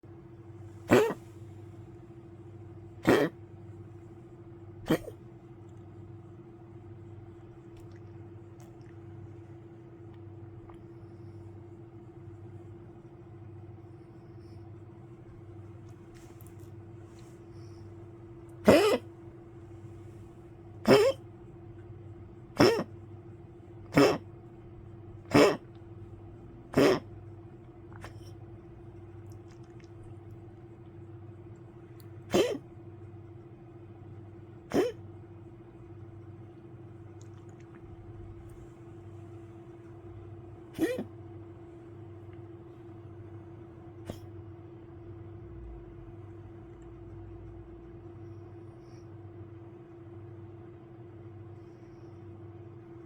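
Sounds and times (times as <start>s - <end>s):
steady low hum: 0.0s - 53.0s
dog coughing: 0.7s - 1.6s, 3.0s - 3.5s, 4.8s - 5.2s, 18.5s - 21.4s, 22.5s - 23.0s, 23.8s - 24.4s, 25.2s - 25.8s, 26.7s - 27.2s, 28.0s - 28.4s, 32.1s - 32.8s, 34.6s - 35.1s, 40.7s - 41.2s, 44.0s - 44.3s.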